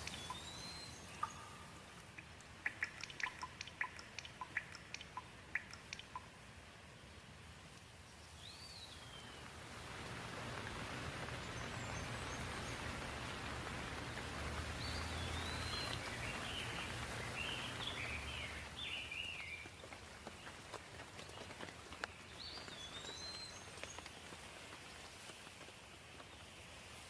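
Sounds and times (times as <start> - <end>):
birds chirping: 0.0 - 7.2, 7.9 - 27.0.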